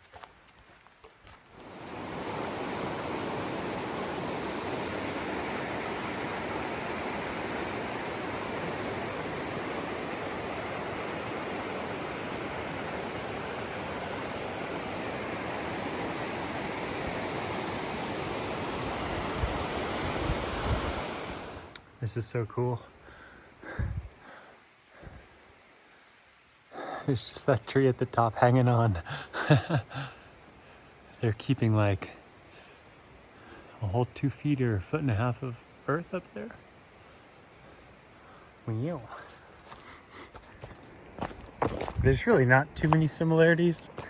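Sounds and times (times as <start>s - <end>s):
waterfall rushing water: 1.6s - 21.7s.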